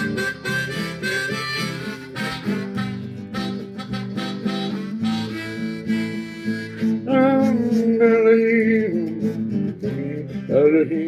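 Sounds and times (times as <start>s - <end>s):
harmonica melody: 0.0s - 8.0s
acoustic guitar strumming: 0.0s - 11.0s.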